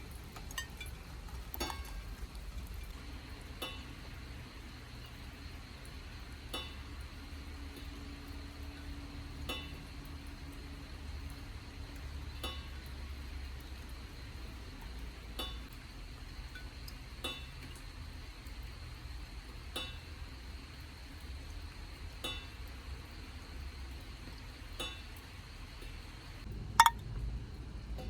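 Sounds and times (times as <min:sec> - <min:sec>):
water drops clinking: 0:00.3 - 0:03.0, 0:26.8 - 0:27.1.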